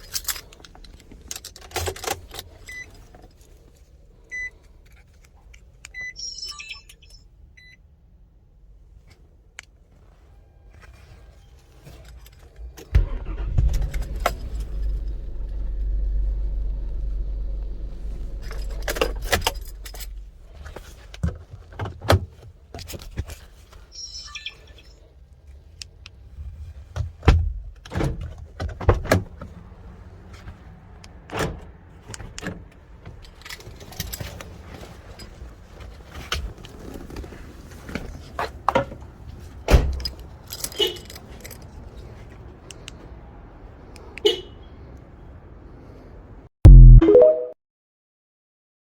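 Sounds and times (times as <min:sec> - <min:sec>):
car keys jangling: 0:00.0 - 0:03.5, 0:11.8 - 0:21.2, 0:33.1 - 0:35.4, 0:39.7 - 0:41.9
steady low rumble: 0:13.5 - 0:21.2
brief high chirp: 0:46.7 - 0:47.6.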